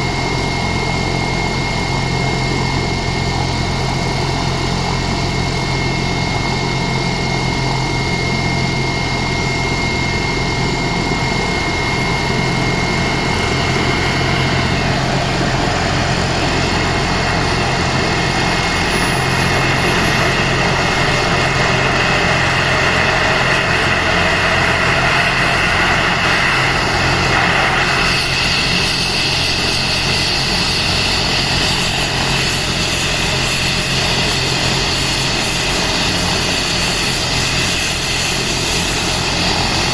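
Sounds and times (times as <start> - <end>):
helicopter rotor turning: 0.0 - 39.9
high whine rising in pitch: 0.0 - 39.9.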